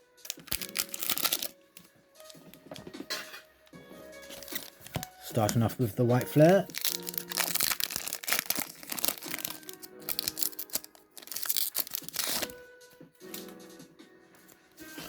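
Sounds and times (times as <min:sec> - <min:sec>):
background music: 0:00.0 - 0:15.0
foil pack crinkling and tearing: 0:00.2 - 0:02.8, 0:04.2 - 0:12.6.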